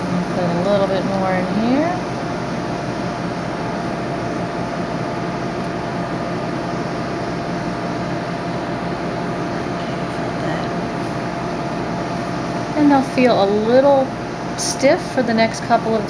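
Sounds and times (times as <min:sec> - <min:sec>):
ventilation hum: 0:00.0 - 0:16.0.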